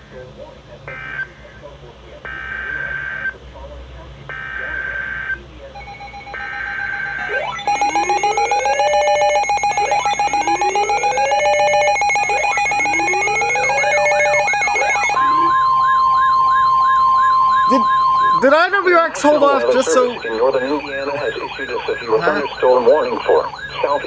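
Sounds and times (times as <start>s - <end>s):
electronic siren wailing: 0.9s - 1.3s, 2.3s - 3.4s, 4.3s - 24.0s
rapidly pulsing tone: 4.3s - 24.0s
warbling siren yelp: 4.3s - 24.0s
steady high alert tone: 5.8s - 24.0s.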